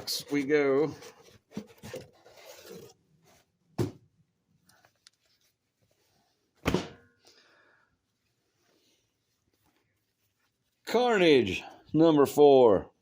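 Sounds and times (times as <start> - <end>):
comic books sliding and rubbing: 0.1 - 3.5.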